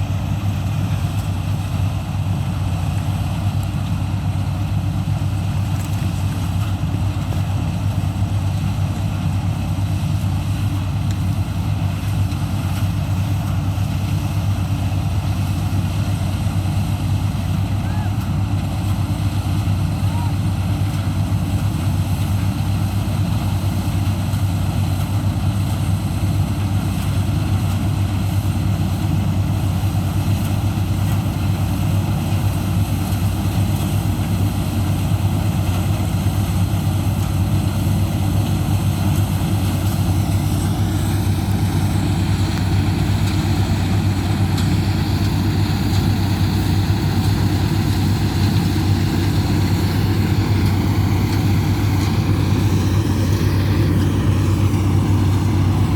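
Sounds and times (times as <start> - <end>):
combine harvester engine drone: 0.0 - 55.9
high machinery whine: 37.4 - 55.9.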